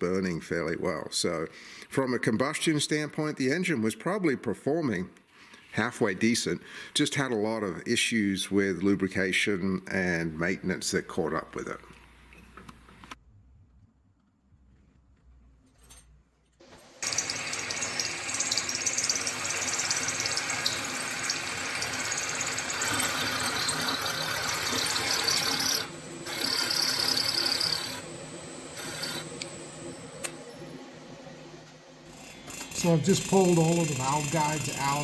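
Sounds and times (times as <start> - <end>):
power drill spinning hone: 16.7 - 30.8, 32.0 - 35.0.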